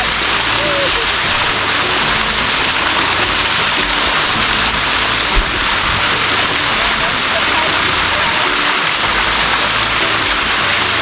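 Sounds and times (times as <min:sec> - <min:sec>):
waterfall rushing over rock: 0:00.0 - 0:11.0
low thump: 0:05.3 - 0:06.6.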